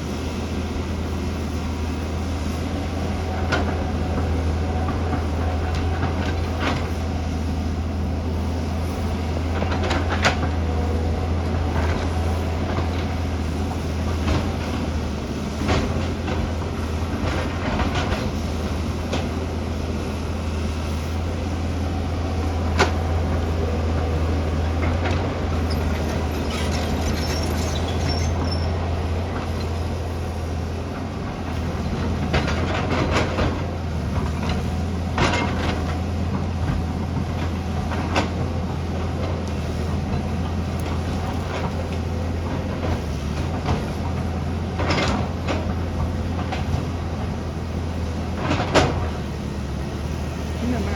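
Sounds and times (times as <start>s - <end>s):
excavator diesel engine droning: 0.0s - 50.9s
machine clanks and knocks: 31.6s - 39.4s, 40.0s - 47.0s, 48.2s - 49.2s.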